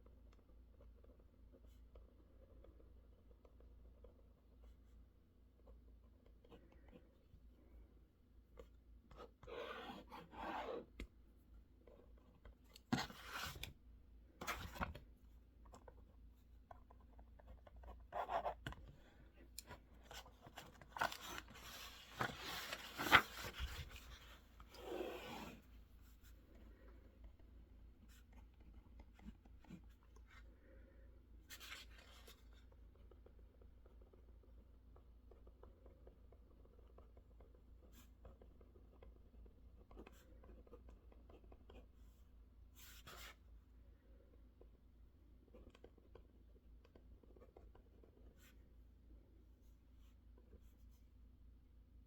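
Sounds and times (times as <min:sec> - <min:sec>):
pen scratching on paper: 0:08.6 - 0:11.0, 0:16.9 - 0:19.2.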